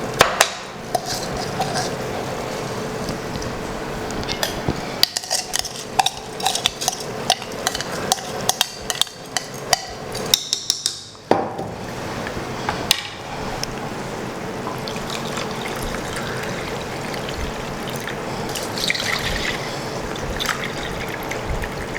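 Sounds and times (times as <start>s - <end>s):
metal spoon scraping a metal pot: 0.9s - 2.4s, 5.0s - 10.4s.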